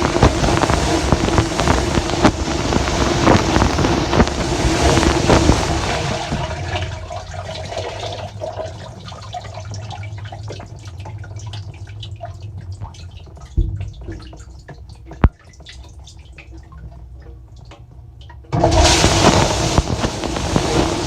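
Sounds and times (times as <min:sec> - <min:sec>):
water spraying in dishwasher: 0:00.0 - 0:11.0, 0:18.6 - 0:21.0
water dripping: 0:00.0 - 0:21.0
short thump: 0:13.6 - 0:14.3.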